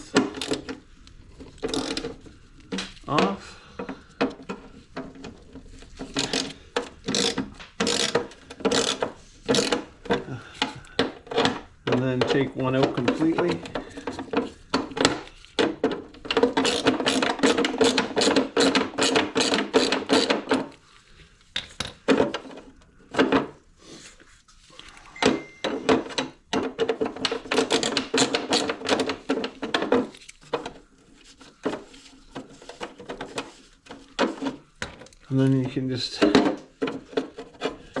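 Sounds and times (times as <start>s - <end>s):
tool clicking rapidly: 16.4s - 20.7s.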